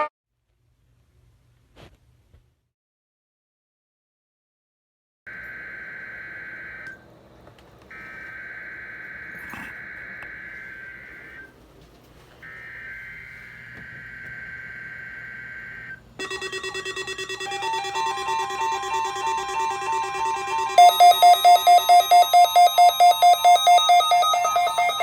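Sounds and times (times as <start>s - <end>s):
shrill digital data tones: 16.2s - 25.0s
pulsing alert tone: 17.6s - 25.0s.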